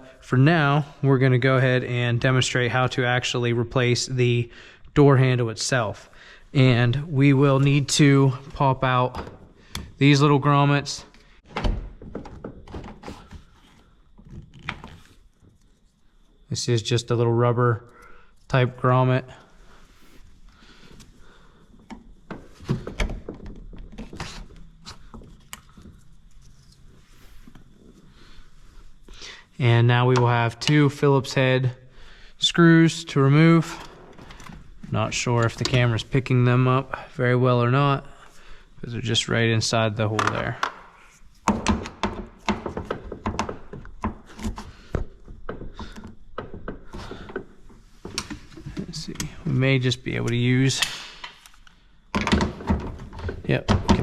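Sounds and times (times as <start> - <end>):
rubber grommets knocking and clicking: 40.1 - 49.4, 50.2 - 54.0.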